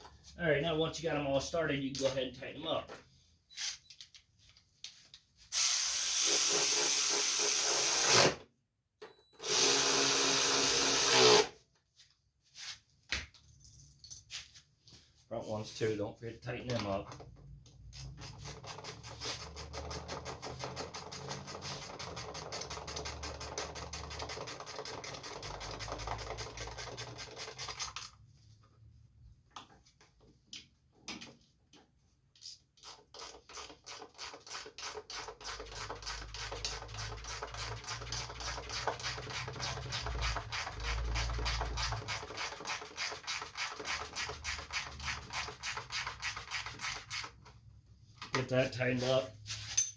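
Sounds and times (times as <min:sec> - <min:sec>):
ratchet wrench clicking: 0:17.9 - 0:28.1, 0:32.4 - 0:47.4.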